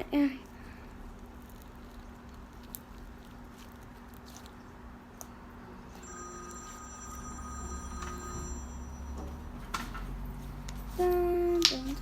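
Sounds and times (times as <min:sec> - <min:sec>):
low room hum: 0:00.0 - 0:12.0
phone ringing: 0:05.9 - 0:10.1.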